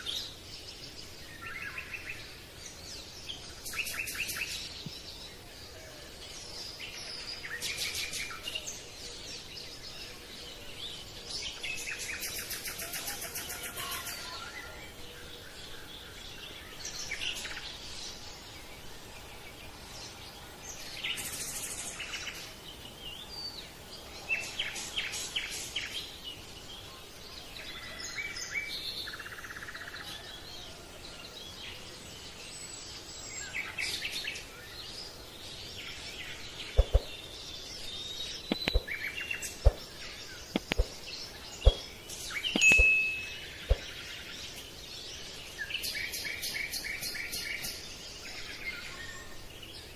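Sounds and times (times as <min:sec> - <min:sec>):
birds chirping and trilling: 0:00.0 - 0:49.9
soft outdoor hiss: 0:00.0 - 0:49.9
sharp clicks: 0:38.5 - 0:38.9, 0:40.5 - 0:41.0, 0:42.5 - 0:43.1.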